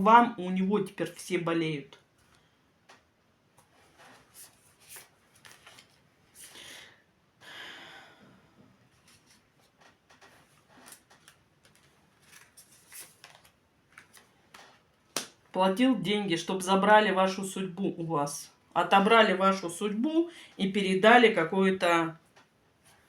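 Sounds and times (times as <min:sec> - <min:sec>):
cards brushing: 0:03.6 - 0:06.6, 0:09.0 - 0:15.3
cards rustling and clicking: 0:03.6 - 0:06.6, 0:09.0 - 0:15.4.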